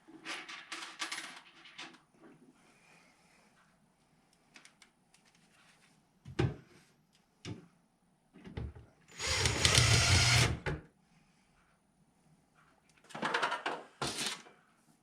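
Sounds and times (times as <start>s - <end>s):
power drill running: 9.1s - 10.6s.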